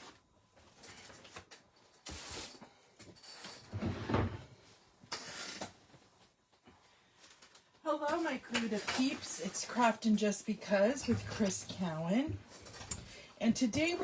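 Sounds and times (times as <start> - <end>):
knocks and rustles of handling: 10.8 - 14.0.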